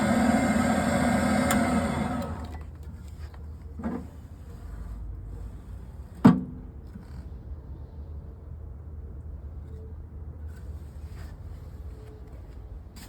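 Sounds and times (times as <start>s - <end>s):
electric motor and gear drive: 0.0s - 2.7s.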